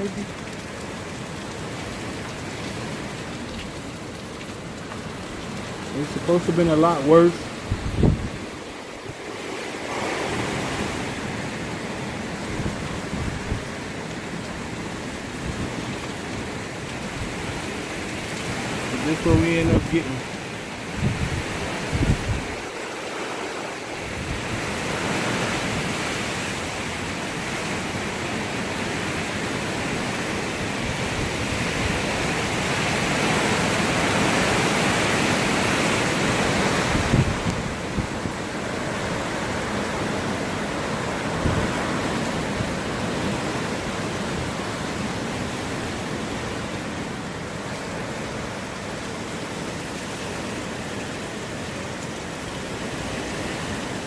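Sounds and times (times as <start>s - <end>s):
strong wind blowing: 7.1s - 13.9s, 20.9s - 26.6s, 30.7s - 44.9s
wind buffeting microphone: 7.6s - 9.3s, 20.9s - 22.8s, 36.2s - 39.8s.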